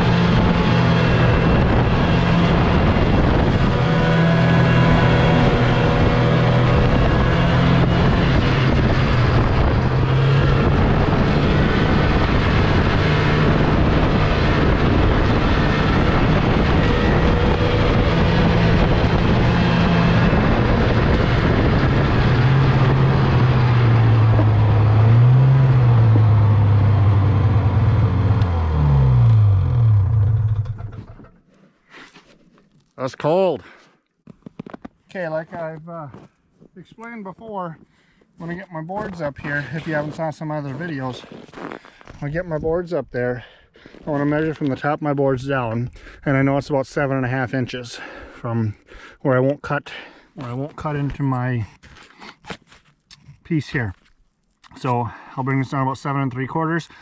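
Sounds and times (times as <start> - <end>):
snowmobile engine running: 0.0 - 31.3, 38.4 - 42.6.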